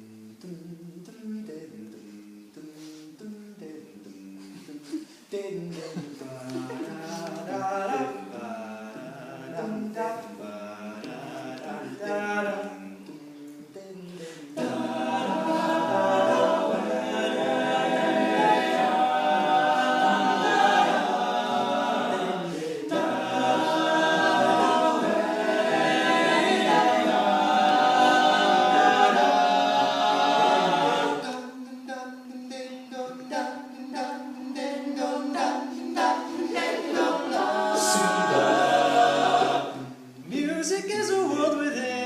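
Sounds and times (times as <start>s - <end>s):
male a cappella harmony singing: 0.0s - 42.0s.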